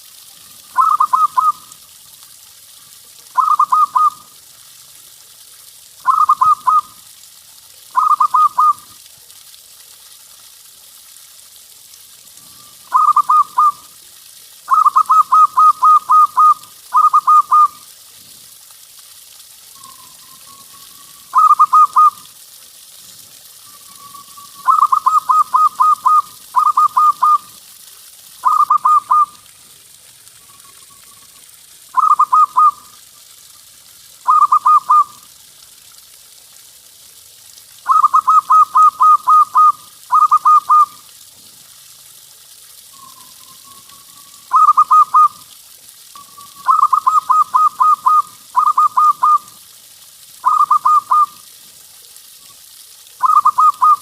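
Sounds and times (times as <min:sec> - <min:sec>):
faint steady hiss: 0:00.0 - 0:54.0
dove cooing: 0:00.8 - 0:01.6, 0:03.4 - 0:04.2, 0:06.0 - 0:06.9, 0:08.0 - 0:08.8, 0:12.9 - 0:13.8, 0:14.7 - 0:17.7, 0:21.3 - 0:22.2, 0:24.6 - 0:27.4, 0:32.0 - 0:32.8, 0:34.3 - 0:35.1, 0:37.9 - 0:40.9, 0:46.6 - 0:49.4, 0:53.2 - 0:54.0.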